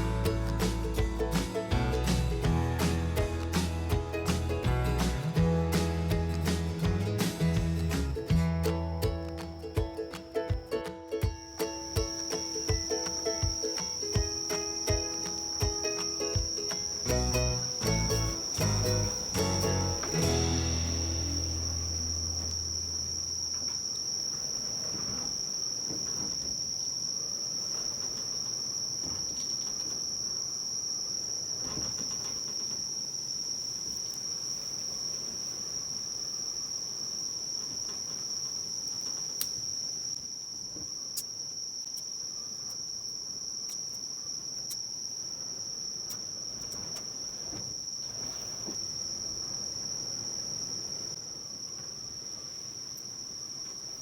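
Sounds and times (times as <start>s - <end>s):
insects chirring: 0.0s - 54.0s
faint rustling: 46.1s - 50.2s.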